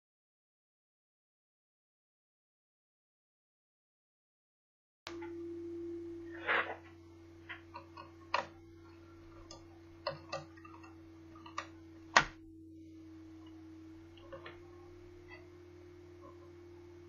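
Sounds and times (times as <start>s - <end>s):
steady low hum: 5.1s - 17.0s
short scrape: 6.3s - 6.9s.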